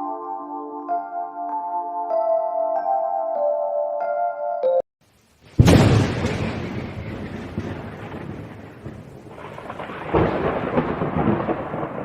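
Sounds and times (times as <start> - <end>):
rain: 5.0 - 12.0
thunder rumbling: 5.4 - 12.0.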